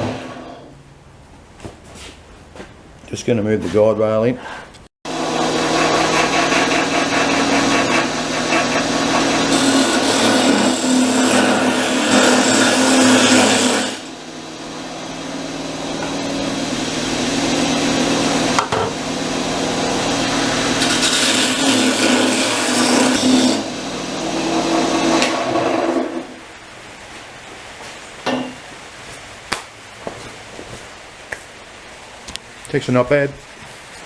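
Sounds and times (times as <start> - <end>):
turning tool cutting log: 5.1 - 14.1, 19.6 - 26.3
wood lathe motor hum: 5.1 - 26.4.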